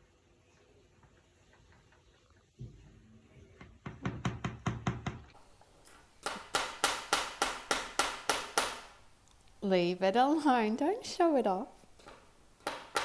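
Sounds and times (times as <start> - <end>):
parakeet pecking hard object: 4.1 - 9.5, 11.9 - 13.0.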